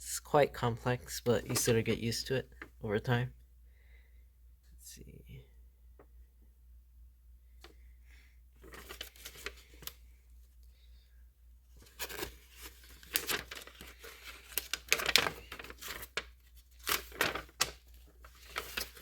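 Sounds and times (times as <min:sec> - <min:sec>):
paper rustling and crinkling: 0:01.3 - 0:02.7, 0:08.6 - 0:10.1, 0:11.7 - 0:19.0.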